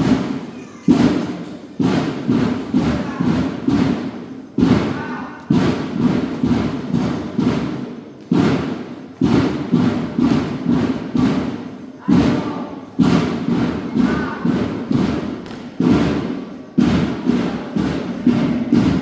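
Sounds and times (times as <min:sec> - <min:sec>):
marching drums beating: 0:00.0 - 0:19.0.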